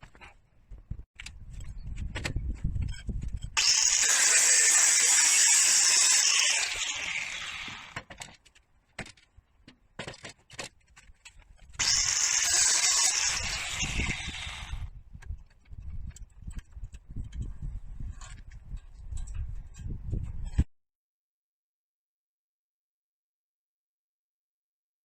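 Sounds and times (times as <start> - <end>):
power tool whining: 3.6 - 8.0, 11.8 - 14.9.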